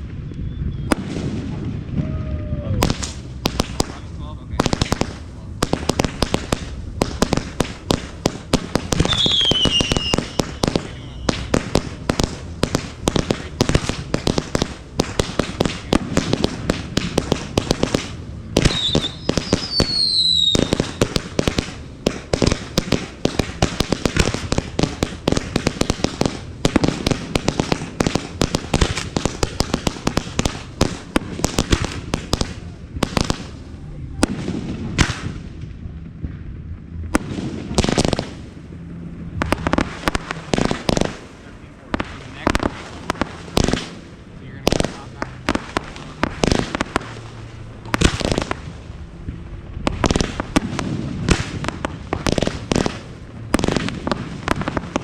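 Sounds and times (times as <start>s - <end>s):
falling firework whistles: 0.0s - 1.3s, 8.8s - 12.0s, 17.1s - 21.8s
fireworks bangs and crackling: 0.0s - 55.0s.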